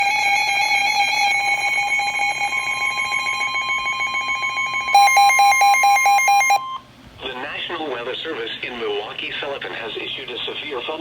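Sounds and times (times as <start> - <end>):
steady electronic alarm tone: 0.0 - 6.9
fast beeping: 1.4 - 6.8.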